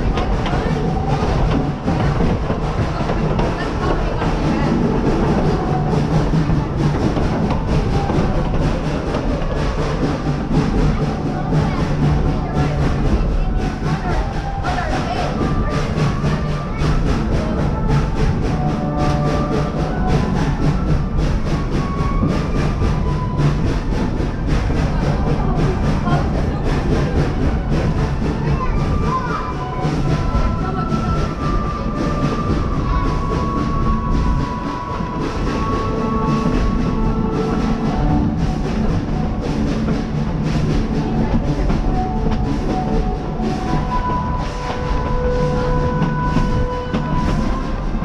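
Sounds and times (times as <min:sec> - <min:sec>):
train cars rumbling on rails: 0:00.0 - 0:48.0.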